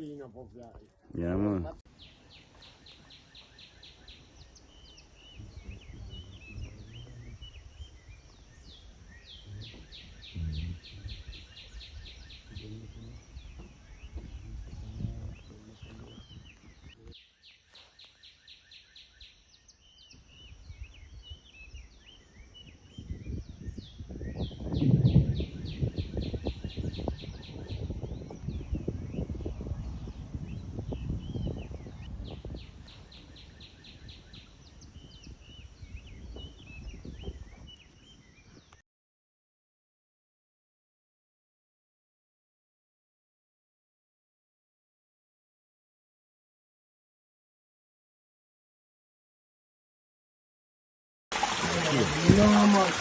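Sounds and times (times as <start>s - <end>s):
birds chirping and calling: 1.9s - 38.8s.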